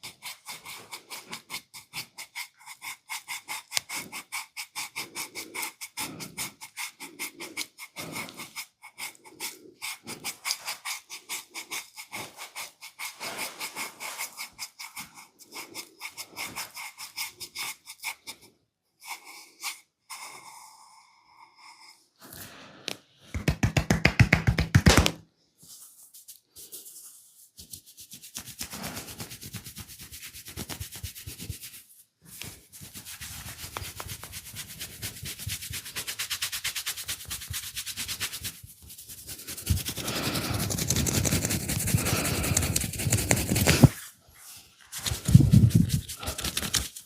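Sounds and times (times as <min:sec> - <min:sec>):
hands rubbing in massage: 0:23.3 - 0:47.0.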